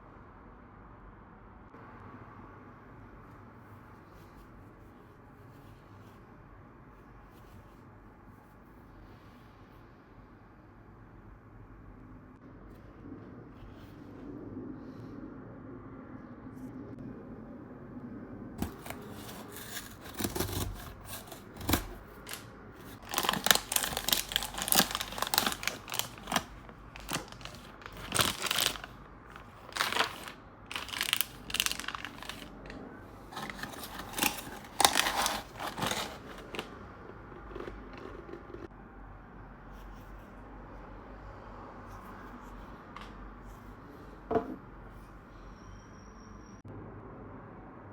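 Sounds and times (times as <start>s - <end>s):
packaging tearing and crinkling: 18.6s - 36.7s.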